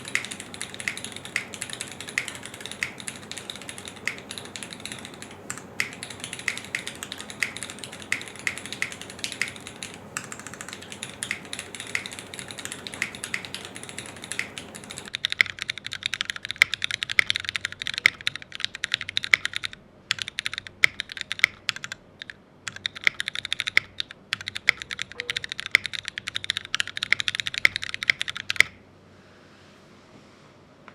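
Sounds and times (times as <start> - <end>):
low background hum: 0.0 - 15.2
mechanical keyboard typing: 0.0 - 28.8.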